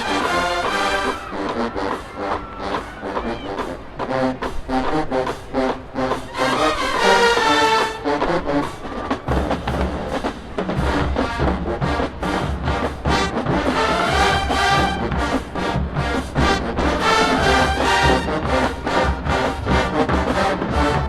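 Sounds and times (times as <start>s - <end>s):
marching band brass: 0.0s - 21.0s
drum strikes: 8.9s - 21.0s.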